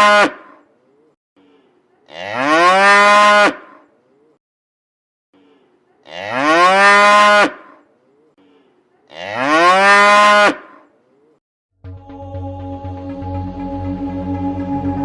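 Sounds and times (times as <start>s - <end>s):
music: 11.8s - 15.0s.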